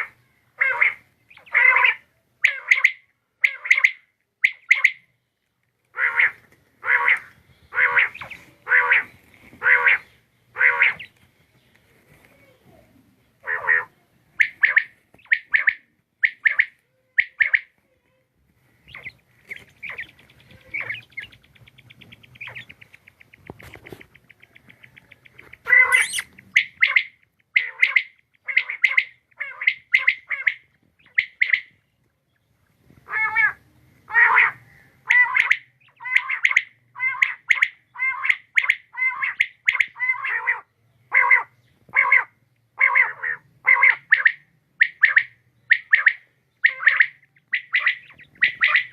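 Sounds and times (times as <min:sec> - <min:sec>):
quail calling: 0:00.0 - 0:05.1, 0:05.9 - 0:11.2, 0:13.4 - 0:17.8, 0:18.7 - 0:31.8, 0:33.0 - 0:48.9
quail soft rapid trill: 0:18.9 - 0:31.8.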